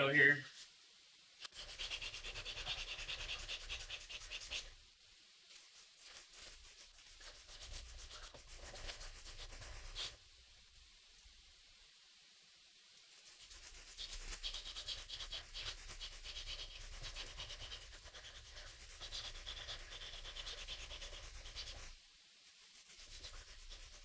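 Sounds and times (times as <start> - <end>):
hand sanding scratchy strokes: 1.5 - 4.8, 5.6 - 10.2, 13.1 - 24.0.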